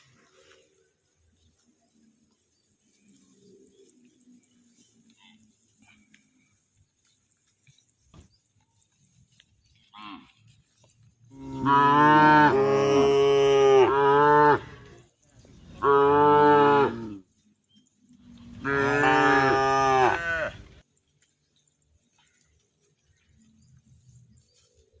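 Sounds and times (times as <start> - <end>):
cow mooing: 11.3 - 14.8, 15.8 - 17.2, 18.5 - 20.6.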